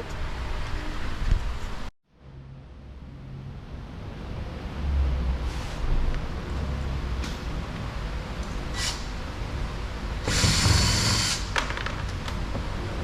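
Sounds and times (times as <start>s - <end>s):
power drill spinning: 10.2s - 11.5s.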